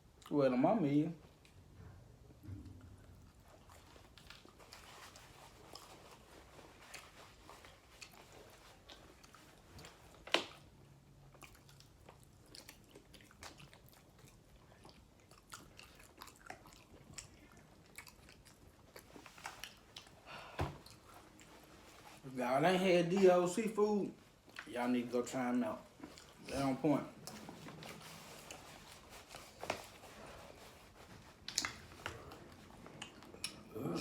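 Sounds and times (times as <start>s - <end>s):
chewing and biting: 2.6s - 22.2s, 25.9s - 26.6s.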